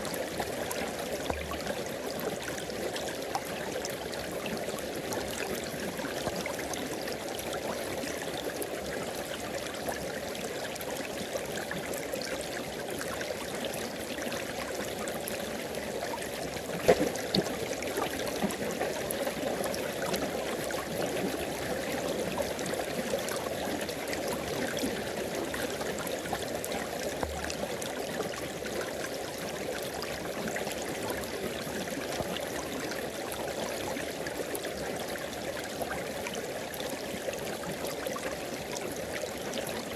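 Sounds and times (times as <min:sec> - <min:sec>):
sharp knock or splash: 0:16.8 - 0:17.4.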